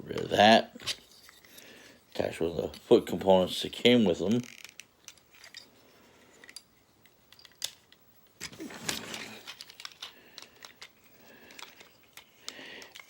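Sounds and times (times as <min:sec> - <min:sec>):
plastic toy parts clicking: 0:04.4 - 0:05.6, 0:07.3 - 0:13.0.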